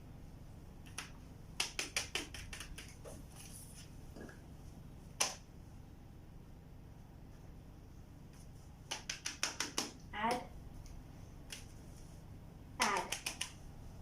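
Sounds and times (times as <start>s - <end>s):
fidget toys clicking and tapping: 12.8s - 13.6s.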